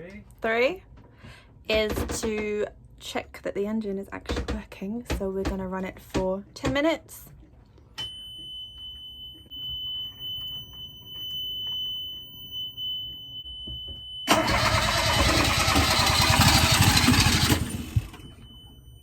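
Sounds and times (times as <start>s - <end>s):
starter cranking diesel engine: 14.3s - 18.4s.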